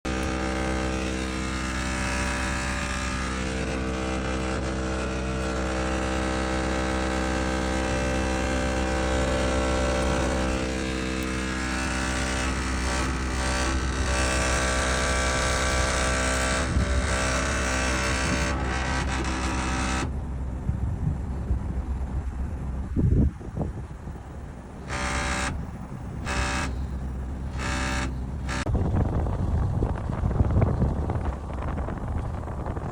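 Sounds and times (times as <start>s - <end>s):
low rumble: 8.5s - 32.9s.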